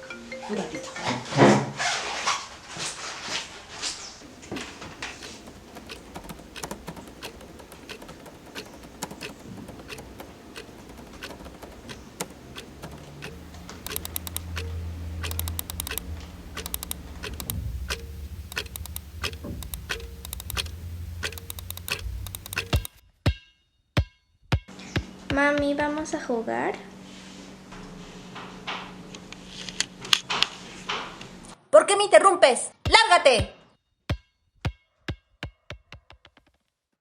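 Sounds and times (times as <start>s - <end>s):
low steady hum: 4.2s - 22.9s
typing on keyboard: 4.2s - 23.0s.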